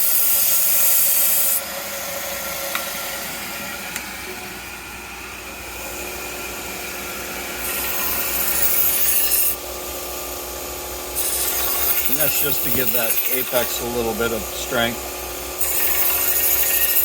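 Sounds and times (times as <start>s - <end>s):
belt sharpener running: 0.0s - 4.1s, 5.7s - 17.0s
high hiss of steel on abrasive: 7.6s - 9.6s, 11.2s - 14.8s, 15.6s - 17.0s.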